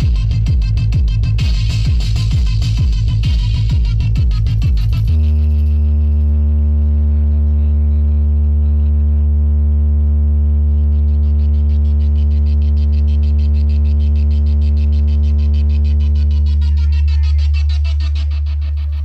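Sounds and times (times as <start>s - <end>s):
quick ticking pattern: 0.0s - 6.1s, 11.0s - 19.0s
deep steady bass tone: 0.0s - 19.0s.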